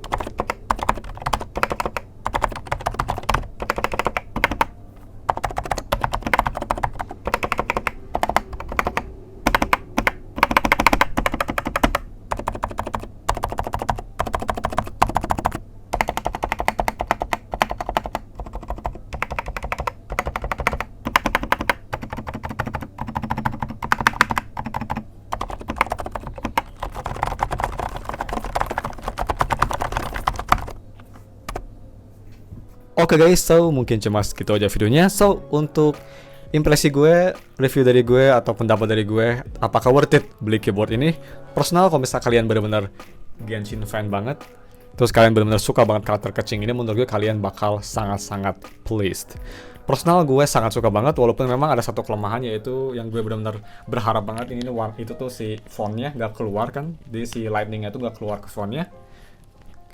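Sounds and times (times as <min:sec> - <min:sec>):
fast typing on mechanical keyboard: 0:00.0 - 0:04.7, 0:05.3 - 0:30.8.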